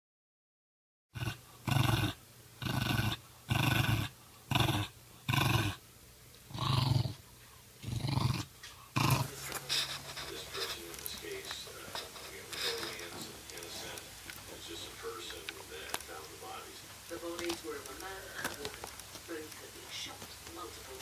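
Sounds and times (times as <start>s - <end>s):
animal growling: 1.2s - 5.8s, 6.5s - 7.2s, 7.8s - 14.1s.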